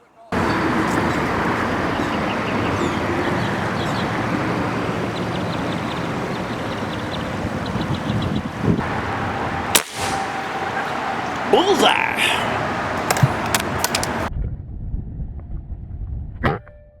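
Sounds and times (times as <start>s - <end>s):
wind: 0.0s - 16.0s
boat motor: 0.4s - 14.3s
sharp crack: 8.8s - 11.8s.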